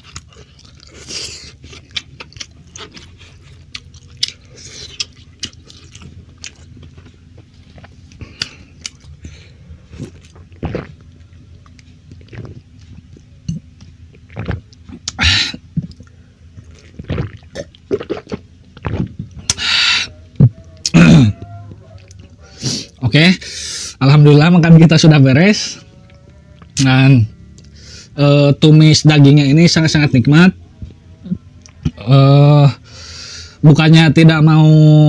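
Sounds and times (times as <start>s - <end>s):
man chewing and lip-smacking: 0.0s - 23.0s, 30.8s - 32.1s.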